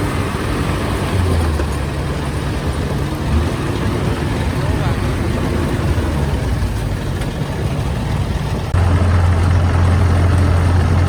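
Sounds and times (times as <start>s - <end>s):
diesel engine humming: 0.0s - 11.0s.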